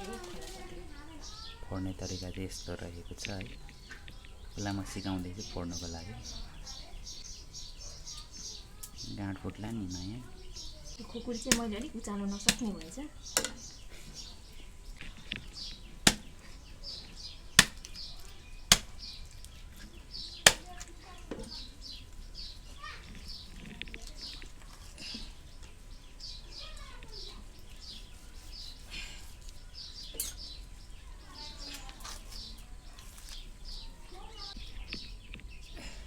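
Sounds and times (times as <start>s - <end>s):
birds chirping: 0.0s - 36.0s
knife chopping on block: 16.1s - 16.3s, 17.6s - 17.9s, 18.7s - 19.0s, 20.5s - 20.7s.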